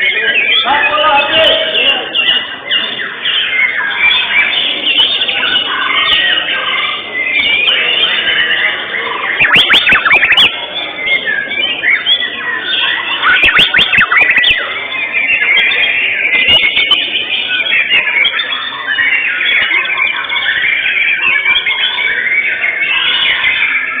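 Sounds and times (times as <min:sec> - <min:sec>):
bird singing whistles and chirps: 0:07.1 - 0:24.0.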